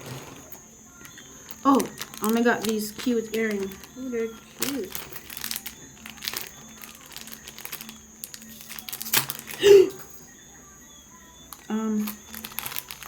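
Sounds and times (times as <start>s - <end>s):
packaging crinkling: 0.0s - 9.7s, 12.0s - 13.0s.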